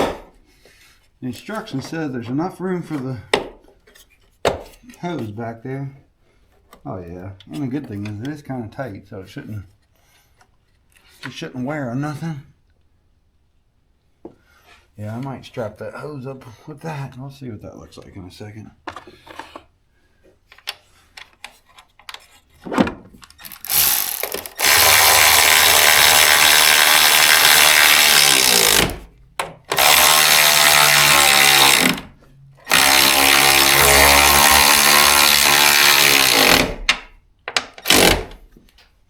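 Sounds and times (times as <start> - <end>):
power tool motor running: 23.4 - 29.1, 29.7 - 36.9, 37.8 - 38.4.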